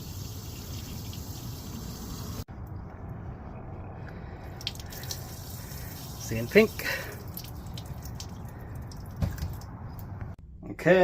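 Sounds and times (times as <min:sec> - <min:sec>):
water running through pipes: 0:00.0 - 0:02.4, 0:04.5 - 0:09.7.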